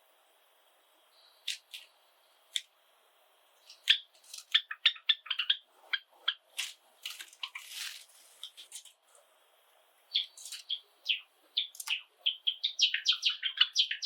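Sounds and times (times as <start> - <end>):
sparrows chirping: 3.6 - 6.5, 10.1 - 14.0
bird rustling: 6.6 - 9.2, 10.3 - 10.8.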